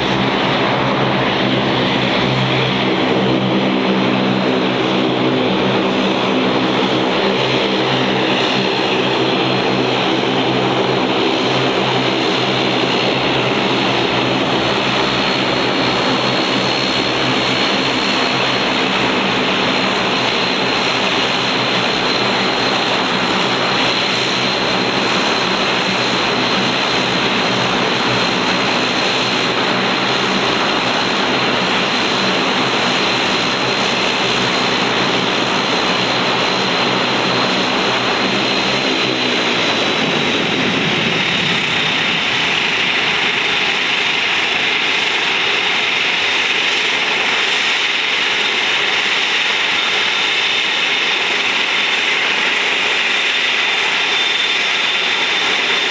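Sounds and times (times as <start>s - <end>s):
propeller drone: 0.0s - 55.9s
turbine whine: 0.0s - 55.9s.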